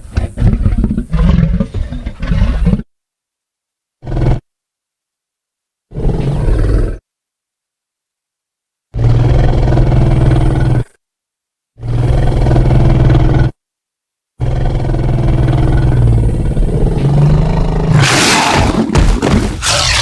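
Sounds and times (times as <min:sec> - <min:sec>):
deep monster roars: 0:14.4 - 0:19.0, 0:19.6 - 0:20.0.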